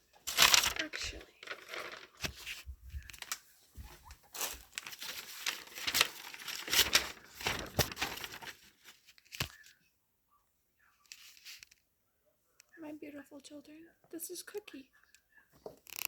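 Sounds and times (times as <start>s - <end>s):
rustling and crinkling: 0.0s - 9.8s, 11.0s - 11.9s.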